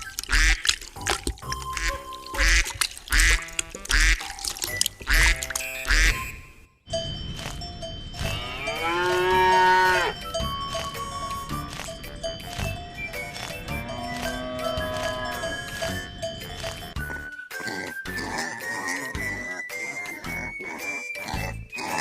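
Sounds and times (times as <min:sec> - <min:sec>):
duck quacking: 0:01.8 - 0:04.2, 0:05.0 - 0:06.2
cow mooing: 0:08.2 - 0:10.2, 0:13.7 - 0:16.0.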